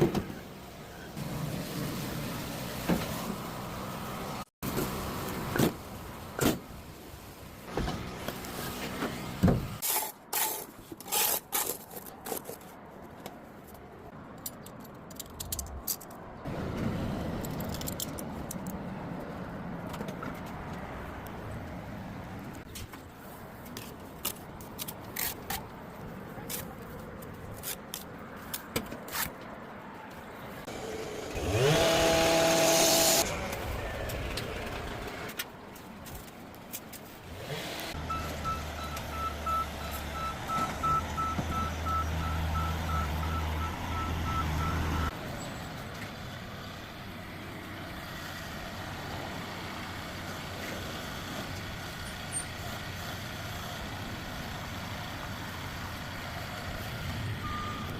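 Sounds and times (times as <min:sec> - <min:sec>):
construction machine engine: 0:30.7 - 0:35.4, 0:37.3 - 0:57.9
reversing alarm beeps: 0:38.1 - 0:45.1.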